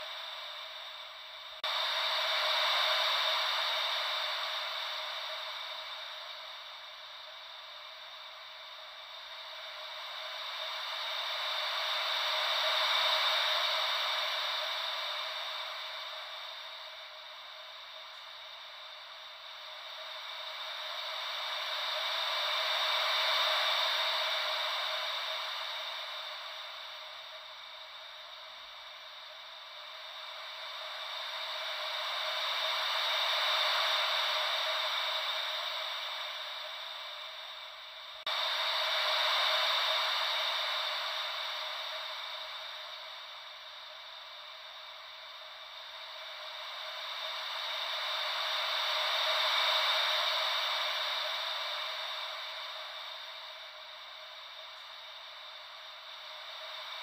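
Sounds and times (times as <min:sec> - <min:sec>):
wave-like white noise hiss: 0:00.0 - 0:57.0.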